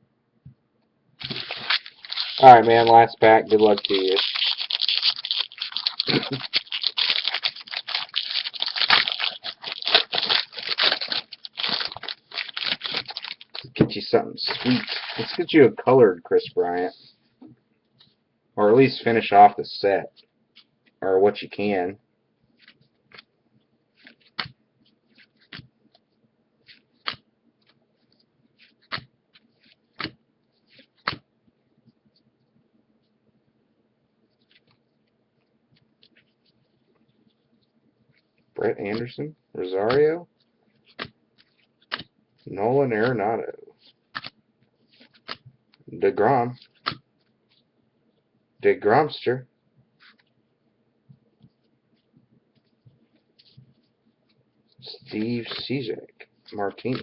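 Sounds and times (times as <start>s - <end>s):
wrapper torn and crinkled: 1.2s - 13.8s, 14.4s - 15.6s.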